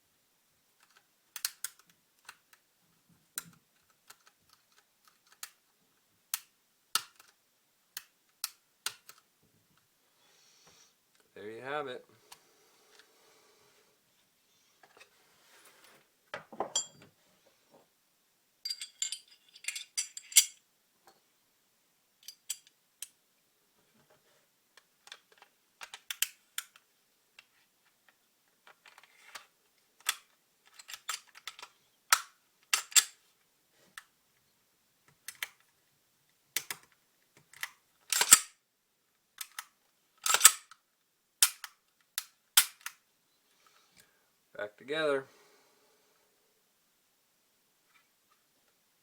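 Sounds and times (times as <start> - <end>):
pistol metallic clicks: 39.4 - 40.8, 41.4 - 43.0.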